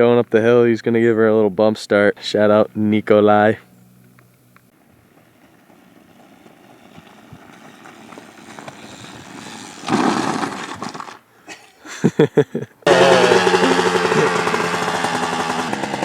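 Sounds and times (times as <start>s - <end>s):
motorcycle rolling noise: 3.8s - 11.2s, 12.9s - 16.0s
loud rough engine burst: 12.9s - 16.0s.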